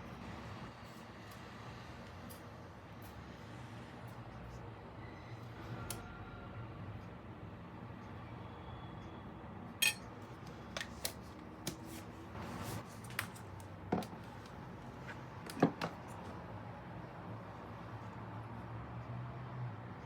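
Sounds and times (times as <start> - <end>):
dishes and cutlery clinking: 9.8 - 10.1.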